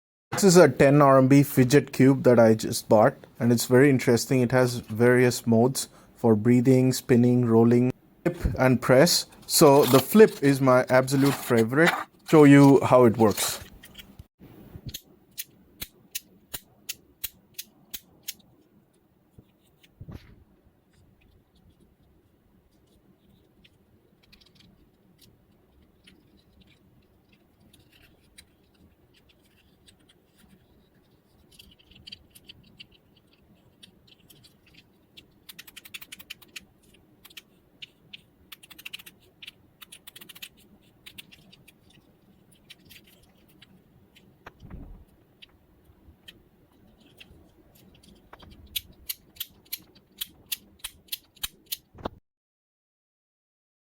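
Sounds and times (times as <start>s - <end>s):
fidget cube clicking: 22.8s - 44.6s, 45.3s - 51.9s.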